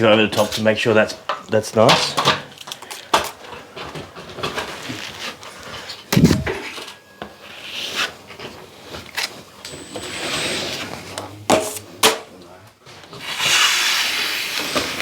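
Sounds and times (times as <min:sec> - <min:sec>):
heavy thump: 0:06.2 - 0:06.7.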